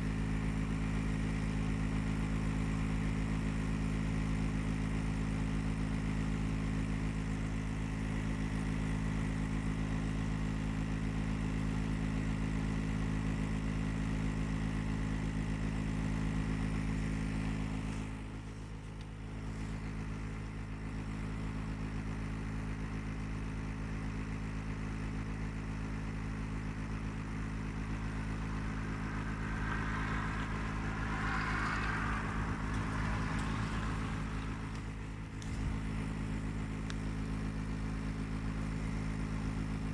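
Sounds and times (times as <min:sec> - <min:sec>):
higher rushing noise: 0:27.0 - 0:35.4.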